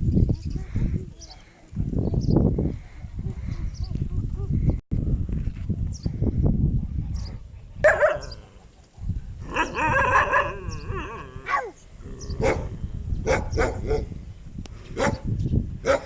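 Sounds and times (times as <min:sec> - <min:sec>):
man barking like a dog: 0:07.8 - 0:08.4, 0:09.5 - 0:11.7, 0:12.4 - 0:14.2, 0:15.0 - 0:15.3.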